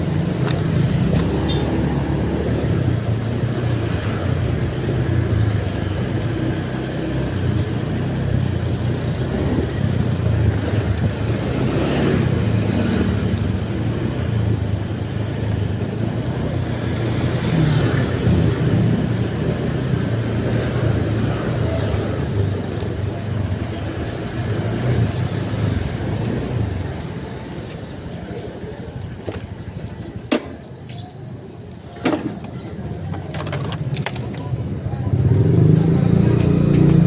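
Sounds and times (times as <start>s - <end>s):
road noise: 0.0s - 37.0s
vehicle engine hum: 0.0s - 37.0s.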